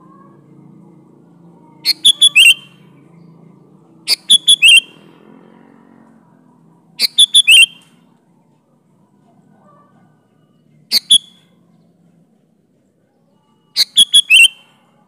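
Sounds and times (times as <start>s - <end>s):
bird singing whistled phrases: 1.8s - 2.8s, 4.1s - 5.0s, 7.0s - 7.9s, 10.9s - 11.5s, 13.8s - 14.7s.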